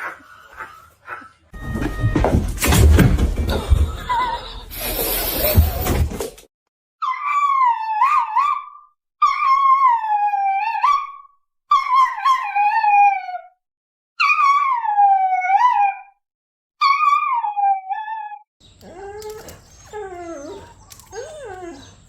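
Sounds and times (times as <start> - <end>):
dog howling: 17.0 - 22.0.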